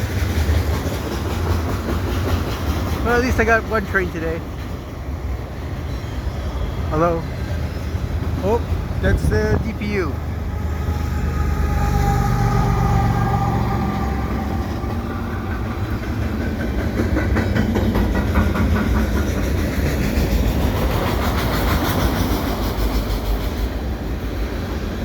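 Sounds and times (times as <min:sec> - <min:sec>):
diesel locomotive engine droning: 0:00.0 - 0:25.0.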